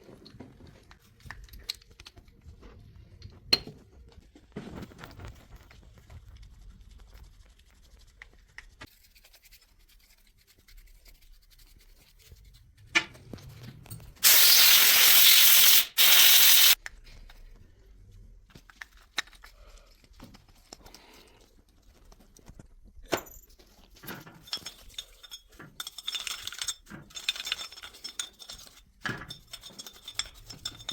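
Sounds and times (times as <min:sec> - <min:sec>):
aerosol spray hiss: 0:14.2 - 0:16.8.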